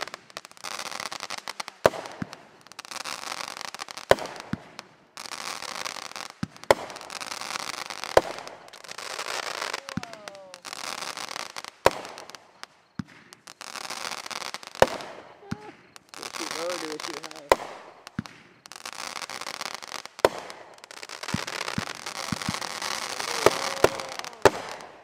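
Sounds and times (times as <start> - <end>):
firework bangs: 0.0 - 25.0
firework crackling: 0.0 - 25.0.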